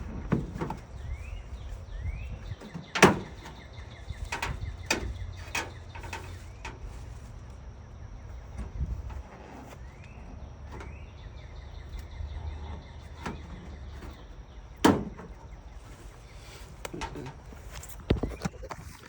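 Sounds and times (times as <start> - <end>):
steady low rumble: 0.0 - 19.0
metal siding clicking and knocking: 2.4 - 6.8, 12.4 - 15.7.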